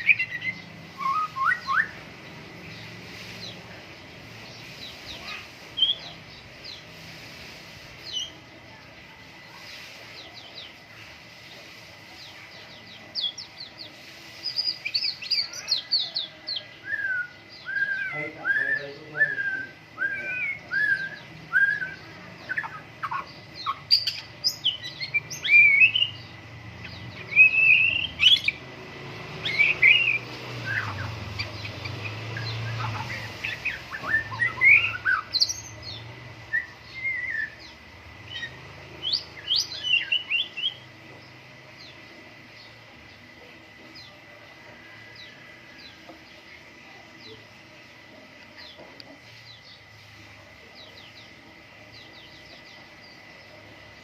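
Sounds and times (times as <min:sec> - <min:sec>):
bird singing whistled song: 0:00.0 - 0:02.1, 0:05.2 - 0:06.0, 0:16.8 - 0:26.3, 0:26.9 - 0:28.6, 0:29.4 - 0:40.9.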